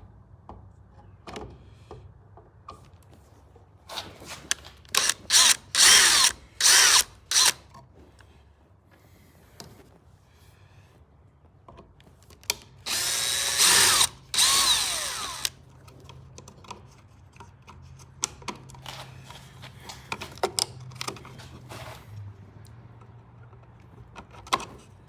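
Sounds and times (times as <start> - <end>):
cordless drill motor: 4.9 - 7.6, 12.9 - 15.6.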